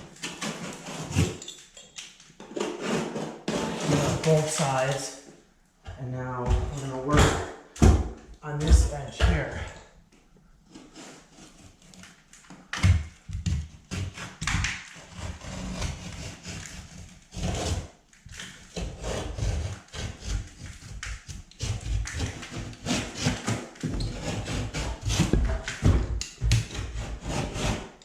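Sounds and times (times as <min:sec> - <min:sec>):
blade scraping drywall: 0:00.0 - 0:05.0, 0:10.6 - 0:28.0.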